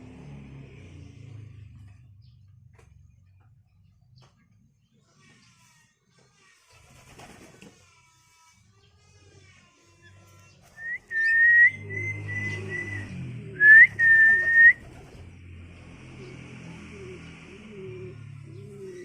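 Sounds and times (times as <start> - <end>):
pigeons cooing: 10.4 - 19.0.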